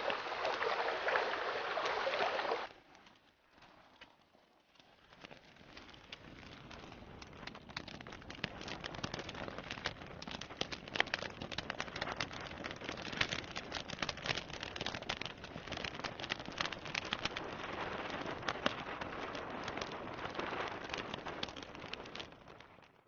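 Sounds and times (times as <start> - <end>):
fountain water trickling and splashing: 0.0 - 2.7.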